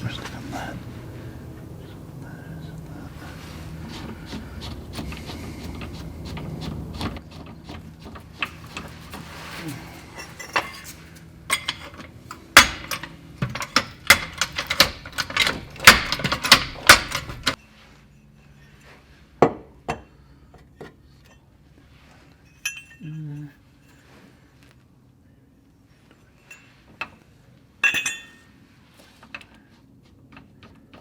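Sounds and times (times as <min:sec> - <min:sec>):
metal tools knocking on car parts: 0:10.2 - 0:17.6, 0:19.4 - 0:21.5, 0:27.8 - 0:28.4.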